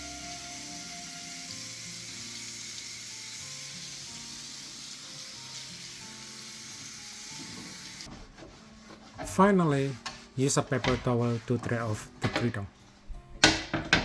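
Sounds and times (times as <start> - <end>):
tap water running into sink: 0.0 - 8.1
background music of held notes: 0.0 - 14.0.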